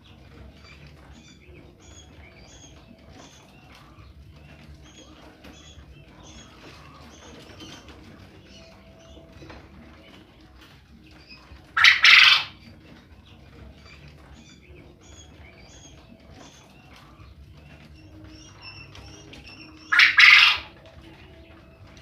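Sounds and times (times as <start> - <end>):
faint chirping: 0.0 - 22.0
quail crowing: 11.3 - 12.7, 18.0 - 22.0.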